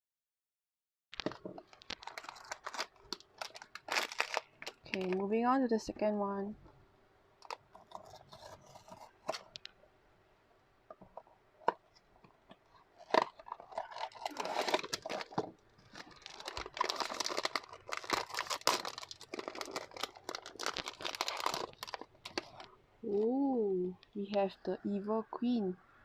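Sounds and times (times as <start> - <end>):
plastic packaging crinkling and tearing: 1.2 - 5.3, 7.4 - 9.8, 12.6 - 23.2.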